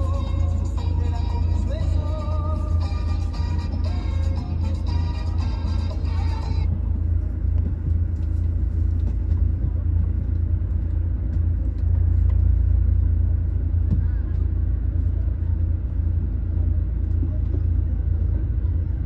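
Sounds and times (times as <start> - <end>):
background music: 0.0 - 7.0
loud low rumble: 0.0 - 19.0.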